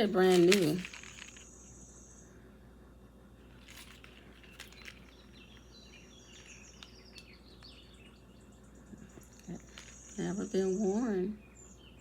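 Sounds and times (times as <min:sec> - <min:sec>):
packaging crinkling: 0:00.0 - 0:01.5, 0:03.5 - 0:08.0, 0:09.0 - 0:10.2
faint high chirps: 0:03.4 - 0:12.0.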